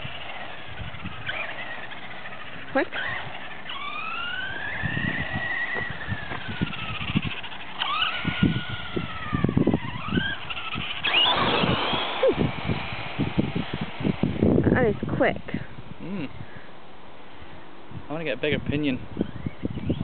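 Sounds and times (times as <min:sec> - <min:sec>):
toy truck motor whining: 0:00.0 - 0:14.4.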